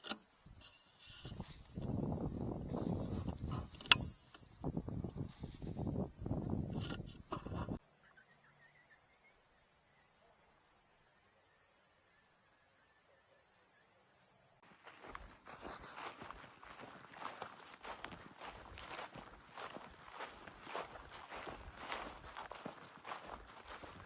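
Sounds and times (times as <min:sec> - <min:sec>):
crickets chirping: 0:08.1 - 0:24.0.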